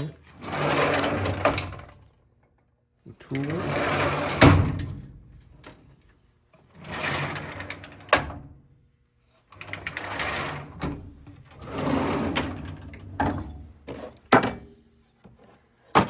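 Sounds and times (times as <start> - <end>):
steel drawers rolling and rattling: 0.3 - 2.0, 3.3 - 5.2, 6.7 - 8.5, 9.6 - 14.2.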